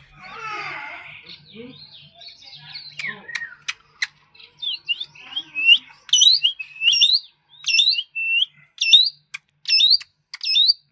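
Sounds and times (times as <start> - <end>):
parakeet whistled calls: 4.8 - 10.9.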